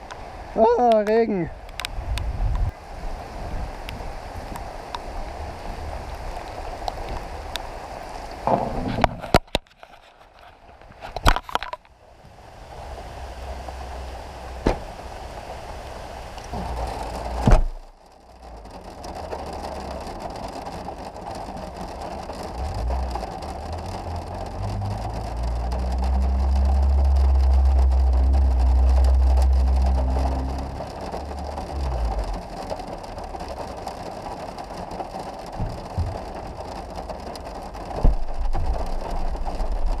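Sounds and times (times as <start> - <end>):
rain falling in forest: 0.0 - 40.0
long low thunder rumble: 22.3 - 33.4.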